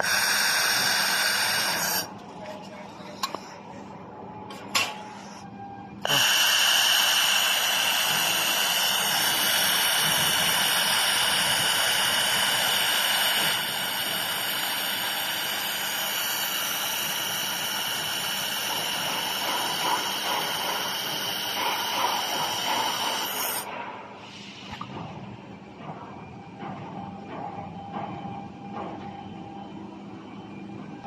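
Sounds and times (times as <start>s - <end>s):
laser welding machine hissing: 0.0s - 2.2s, 6.0s - 25.0s.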